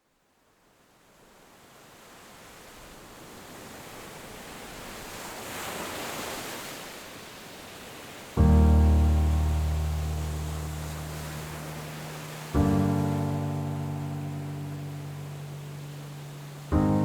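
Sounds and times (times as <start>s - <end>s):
ocean wave washing: 8.0s - 17.0s
music: 8.4s - 17.0s.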